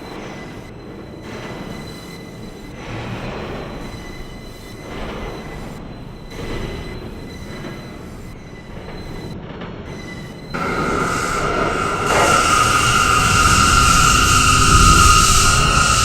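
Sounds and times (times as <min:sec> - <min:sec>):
subway train rumble: 0:00.0 - 0:16.0
high-pitched wheel squeal: 0:10.6 - 0:16.0.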